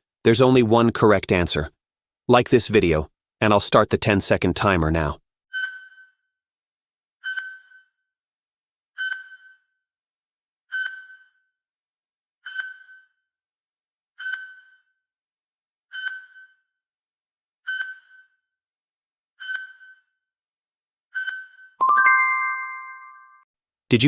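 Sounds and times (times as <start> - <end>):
high timer ding: 21.8 - 23.4.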